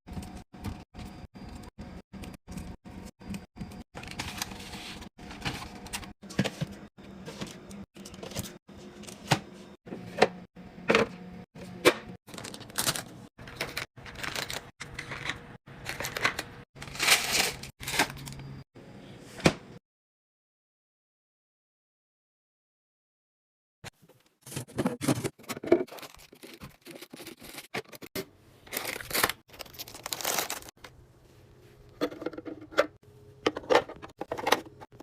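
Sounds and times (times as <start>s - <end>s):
packaged items clattering: 12.3s - 18.4s, 24.4s - 30.8s.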